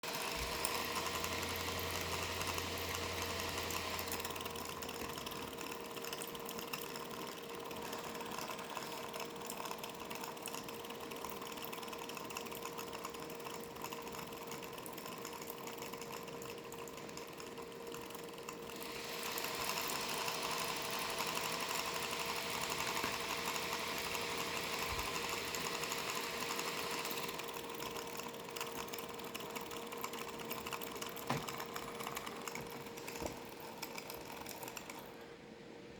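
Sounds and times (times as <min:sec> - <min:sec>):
laptop fan whirring: 0:00.0 - 0:35.9.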